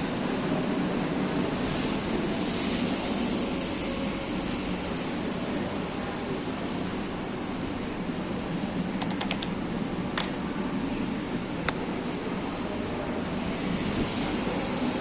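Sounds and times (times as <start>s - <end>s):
sharp clicks: 9.0s - 9.6s.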